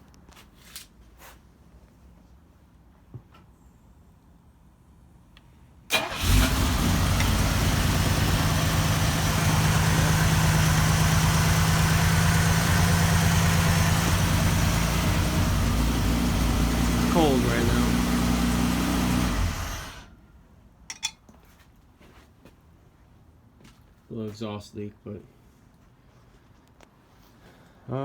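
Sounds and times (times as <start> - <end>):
car engine starting and idling: 5.9 - 20.2.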